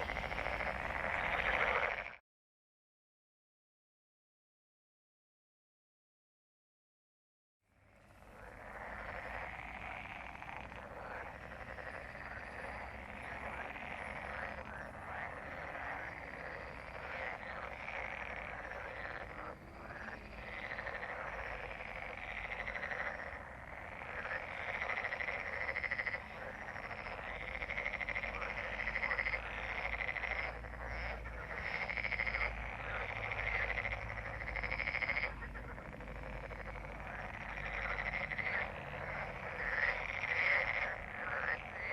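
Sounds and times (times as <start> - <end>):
frogs croaking in chorus: 0.0 - 2.2, 7.8 - 41.9.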